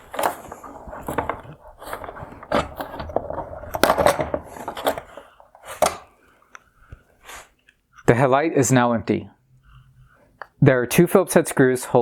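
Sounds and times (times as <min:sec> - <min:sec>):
hard plastic clicks and scraping: 0:00.0 - 0:07.0.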